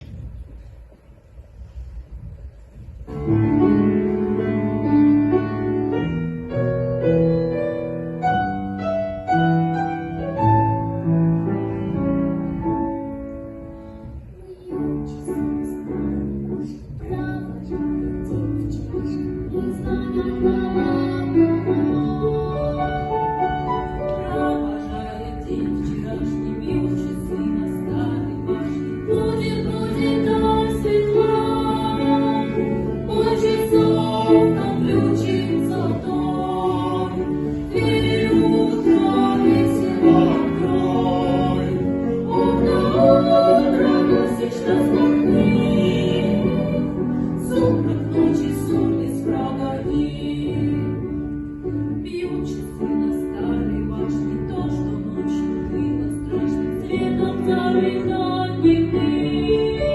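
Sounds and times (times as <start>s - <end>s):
piano accompaniment: 2.9s - 59.9s
vocal ensemble singing: 15.6s - 51.4s, 52.1s - 59.9s.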